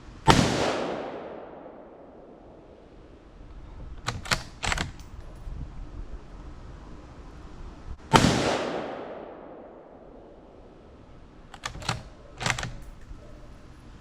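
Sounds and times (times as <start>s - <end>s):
rifle shot echoing: 0.2s - 3.3s, 8.0s - 13.4s
rifle bolt clicking: 4.0s - 5.3s, 11.5s - 13.2s.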